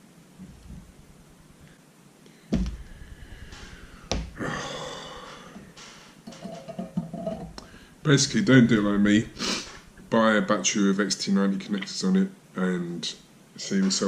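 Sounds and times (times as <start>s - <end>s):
hissing breathy noise: 1.5s - 6.2s, 7.5s - 10.2s
sharp knocks: 2.5s - 10.1s.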